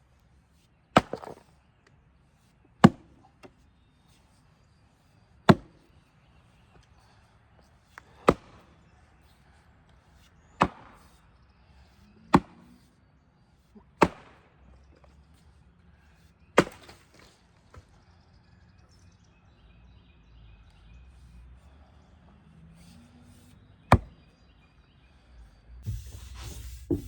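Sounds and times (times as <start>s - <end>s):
heavy blows on wood: 25.8s - 27.0s.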